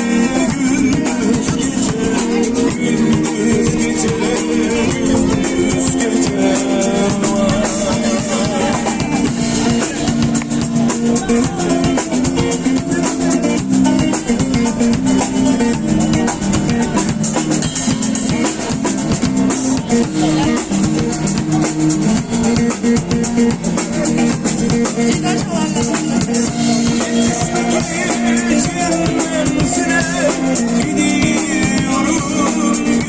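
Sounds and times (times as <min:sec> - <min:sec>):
drum beat: 0:00.0 - 0:33.0.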